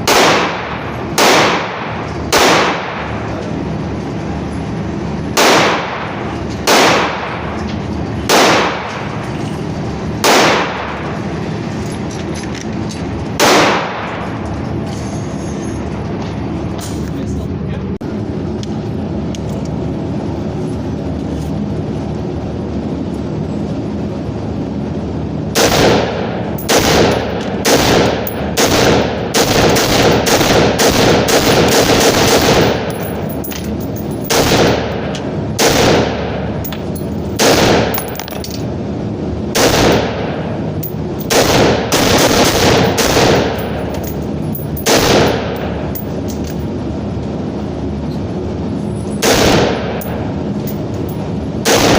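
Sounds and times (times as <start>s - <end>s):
gunshots: 0.0s - 3.2s, 5.4s - 7.5s, 8.2s - 9.0s, 10.2s - 11.0s, 13.4s - 14.2s, 25.6s - 33.3s, 34.0s - 36.6s, 37.3s - 38.3s, 39.5s - 40.5s, 41.2s - 46.0s, 49.2s - 50.3s, 51.6s - 51.9s
rapid string of gunshots: 0.0s - 3.2s, 5.3s - 7.5s, 8.2s - 8.9s, 10.2s - 11.0s, 13.4s - 14.2s, 25.5s - 33.3s, 34.0s - 36.6s, 37.3s - 38.3s, 39.5s - 40.5s, 41.2s - 43.9s, 44.7s - 46.0s, 49.2s - 50.3s, 51.6s - 51.9s.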